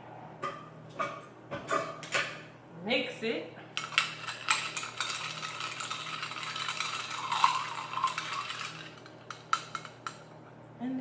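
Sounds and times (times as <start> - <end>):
ice and liquid rattling: 3.8 - 10.2.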